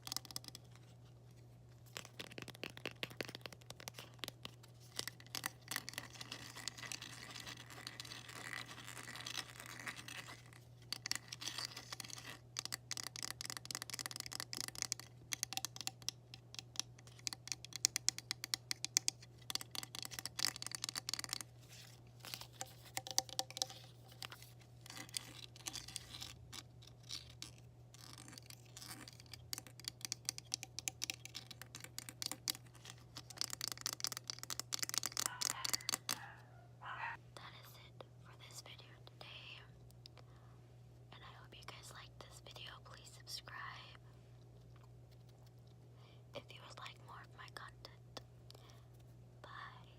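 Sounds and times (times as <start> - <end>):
tapping and scratching on hard objects: 0.0 - 0.9, 1.9 - 36.3.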